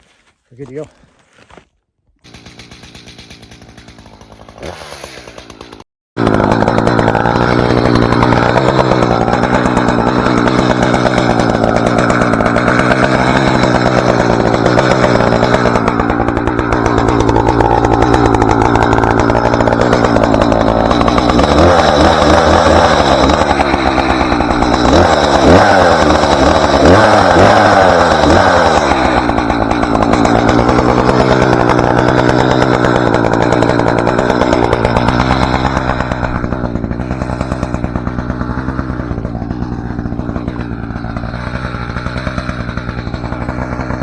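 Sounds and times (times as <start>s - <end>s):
chainsaw running and revving: 2.2s - 44.0s.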